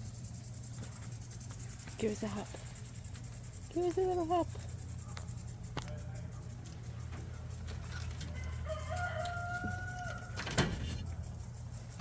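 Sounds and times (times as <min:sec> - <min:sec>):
steady low hum: 0:00.0 - 0:12.0
rooster crowing: 0:08.2 - 0:10.8.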